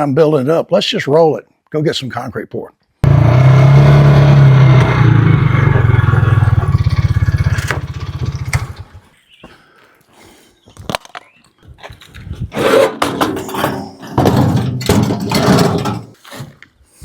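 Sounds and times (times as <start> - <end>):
engine running and shutting off: 3.0 - 9.0.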